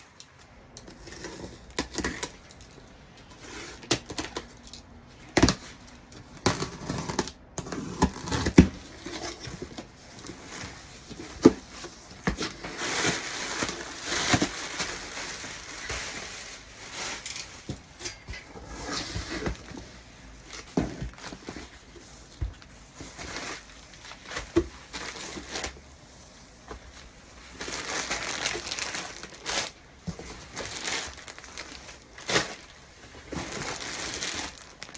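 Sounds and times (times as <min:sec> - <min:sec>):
packaging crinkling and tearing: 0:18.9 - 0:25.8, 0:26.7 - 0:34.9.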